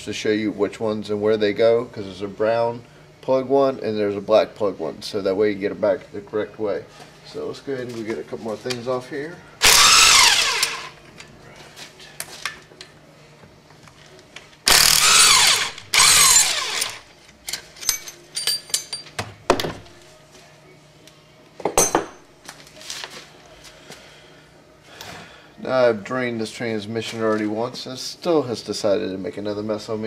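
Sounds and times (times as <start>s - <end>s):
power tool spinning bolts: 9.6s - 11.0s, 14.7s - 17.0s
metal clinks of falling bolts: 17.5s - 19.8s.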